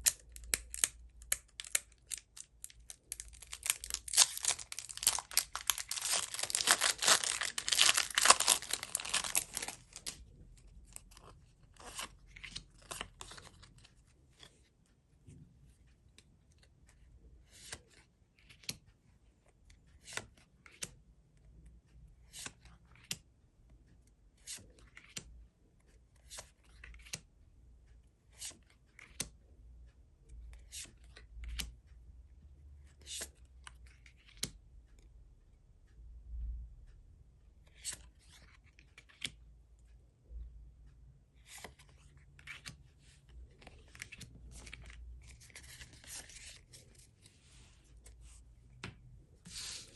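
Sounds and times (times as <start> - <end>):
card packs clicking and rustling: 0.1 - 10.2.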